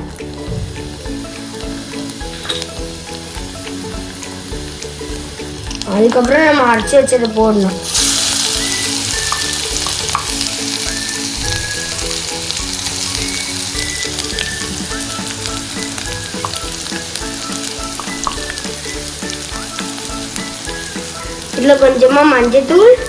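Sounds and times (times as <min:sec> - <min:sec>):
paste sizzling in hot oil: 0:07.8 - 0:14.0.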